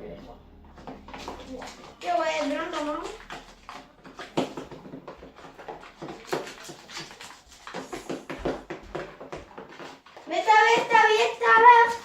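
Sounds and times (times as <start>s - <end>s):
slime stirred in a bowl: 0.2s - 12.0s.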